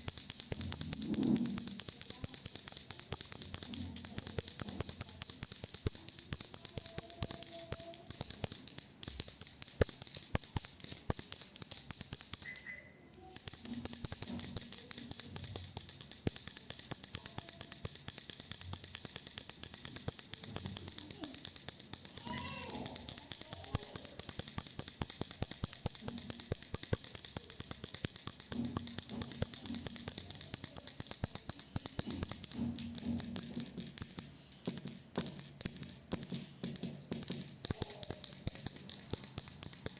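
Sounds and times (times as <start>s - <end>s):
hand bell ringing: 0.0s - 39.9s.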